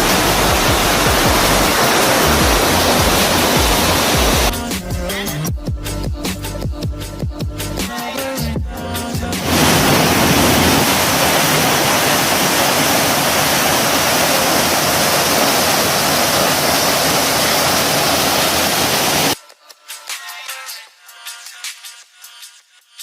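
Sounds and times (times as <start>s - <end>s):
waterfall rushing: 0.0s - 4.5s, 9.4s - 19.4s
electronic background music: 0.0s - 9.6s.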